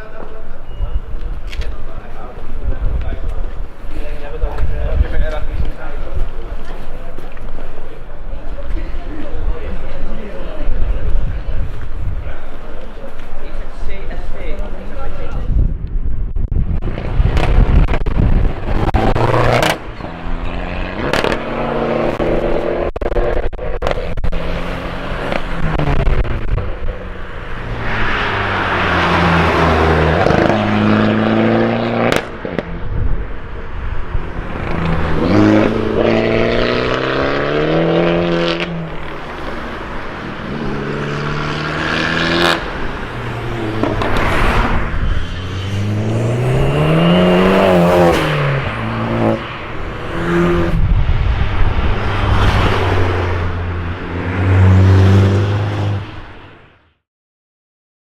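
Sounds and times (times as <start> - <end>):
exhaust crackles and pops: 15.7 - 20.0, 21.0 - 21.5, 22.1 - 24.4, 25.2 - 27.1, 32.0 - 32.9
car engine revving: 16.8 - 56.4.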